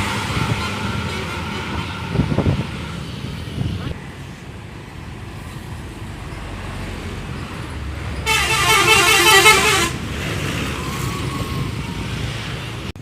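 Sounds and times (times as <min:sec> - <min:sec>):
bus engine rumbling: 0:00.0 - 0:13.0
musical air horn: 0:08.2 - 0:10.0.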